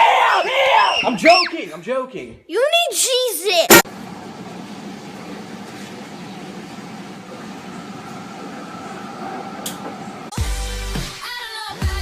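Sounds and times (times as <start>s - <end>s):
mechanical hum: 3.7s - 10.4s.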